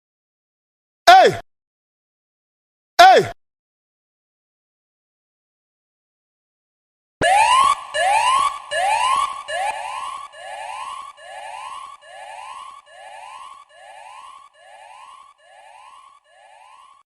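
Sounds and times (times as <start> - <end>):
electronic siren whooping: 7.2 - 17.0.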